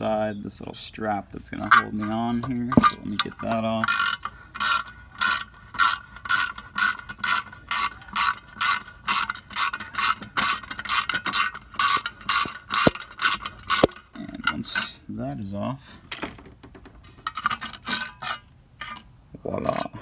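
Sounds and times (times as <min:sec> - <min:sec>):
ratchet wrench clicking: 0:10.9 - 0:13.1.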